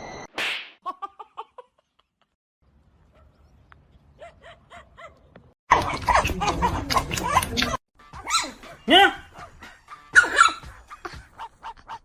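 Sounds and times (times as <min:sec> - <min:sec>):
dog barking: 0:04.2 - 0:06.2, 0:10.1 - 0:10.7.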